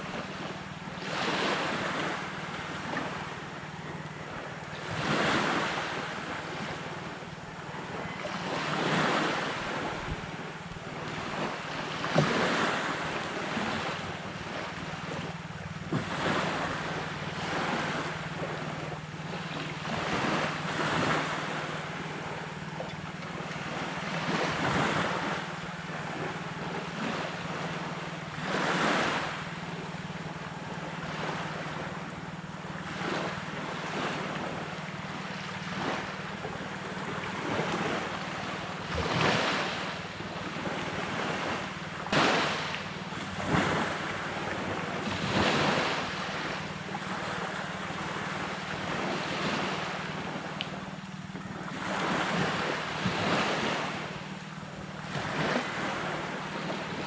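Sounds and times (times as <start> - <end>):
waves breaking on beach: 0.0 - 57.0.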